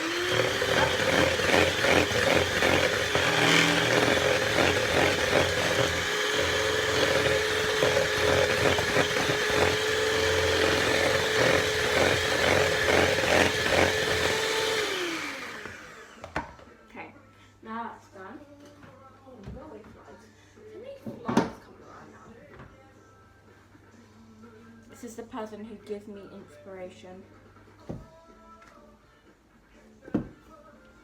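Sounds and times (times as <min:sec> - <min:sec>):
electric hand mixer running: 0:00.0 - 0:16.5.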